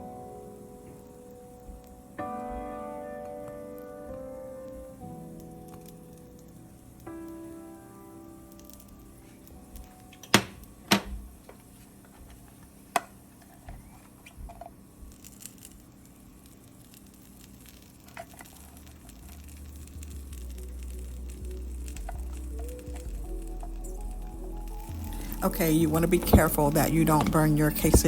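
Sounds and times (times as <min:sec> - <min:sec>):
quesadilla frying in pan: 0:12.7 - 0:28.0.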